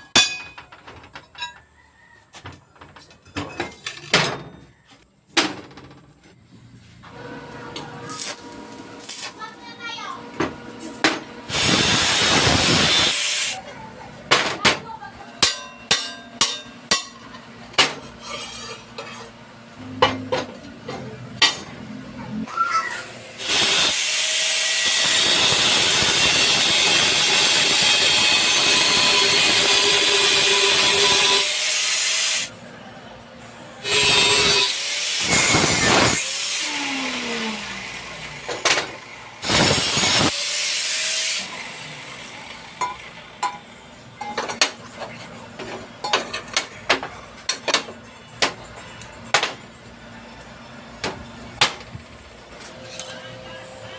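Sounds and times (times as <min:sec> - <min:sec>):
power tool running: 0:11.4 - 0:13.6, 0:23.2 - 0:32.5, 0:33.8 - 0:42.8.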